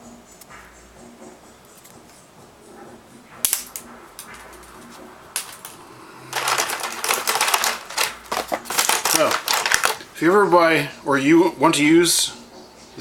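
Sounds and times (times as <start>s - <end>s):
plastic zip ties clicking: 3.5s - 4.8s.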